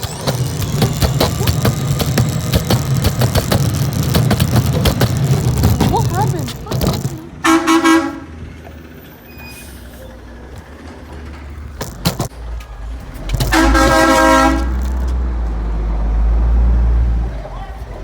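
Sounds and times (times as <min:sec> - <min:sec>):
low truck engine rumble: 0:00.0 - 0:18.0
garbage truck horn honking: 0:00.1 - 0:10.0, 0:13.3 - 0:15.2.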